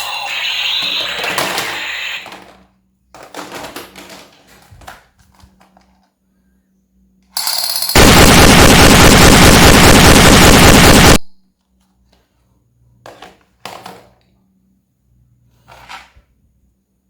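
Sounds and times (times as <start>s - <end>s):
toy gun plastic clicks and rattles: 7.4s - 8.0s
loud rapid machine-gun noise: 7.4s - 11.3s.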